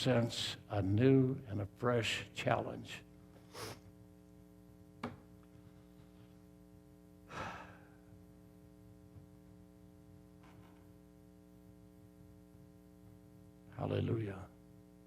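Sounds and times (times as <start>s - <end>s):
low electrical hum: 0.0s - 15.0s
man sighing: 7.3s - 8.1s.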